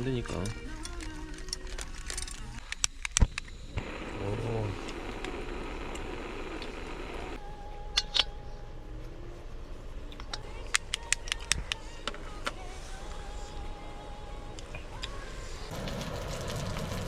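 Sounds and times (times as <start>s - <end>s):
faint steady hum: 0.0s - 17.0s
soft steady rushing: 3.8s - 7.4s.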